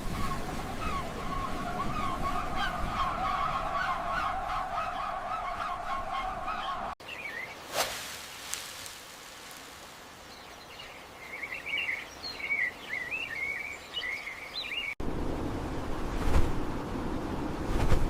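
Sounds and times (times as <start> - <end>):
soft outdoor hiss: 7.0 - 18.0.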